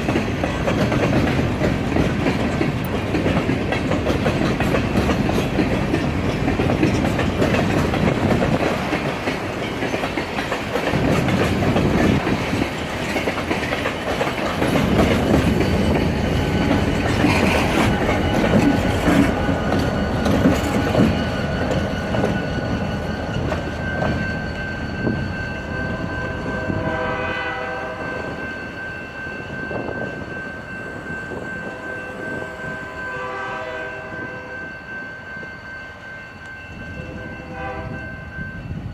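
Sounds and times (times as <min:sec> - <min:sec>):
train rumble and wheel clatter: 0:00.0 - 0:38.9
train horn: 0:25.0 - 0:28.6, 0:31.3 - 0:38.9.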